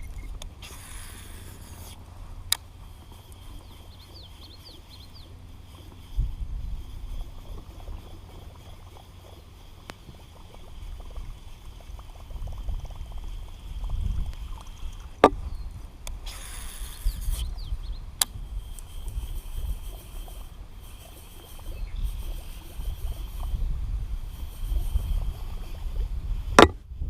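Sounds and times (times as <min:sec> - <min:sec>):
water lapping around a boat: 0:00.0 - 0:27.0
bird chirps: 0:03.6 - 0:05.4.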